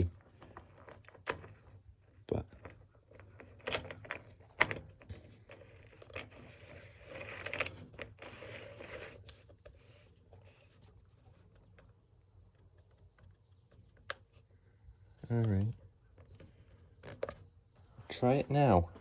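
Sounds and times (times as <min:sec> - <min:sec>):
scraping and rattling parts: 0:00.0 - 0:11.4.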